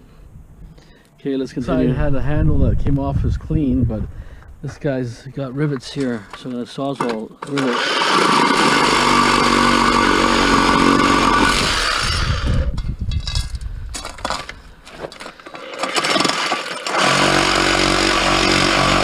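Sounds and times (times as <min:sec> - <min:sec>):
reciprocating saw cutting metal: 0:07.4 - 0:12.7, 0:15.6 - 0:19.0.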